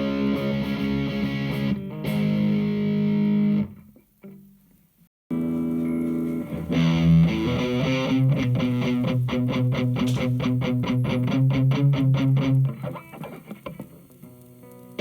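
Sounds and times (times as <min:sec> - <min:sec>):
overdriven electric guitar: 0:00.0 - 0:04.5, 0:05.3 - 0:15.0
guitar chord ringing: 0:05.3 - 0:12.8
fast picked guitar notes: 0:05.3 - 0:13.8.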